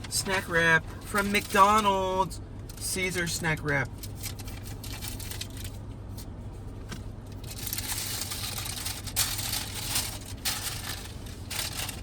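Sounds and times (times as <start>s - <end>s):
paper wrapper crinkling: 3.9s - 5.8s, 7.4s - 12.0s.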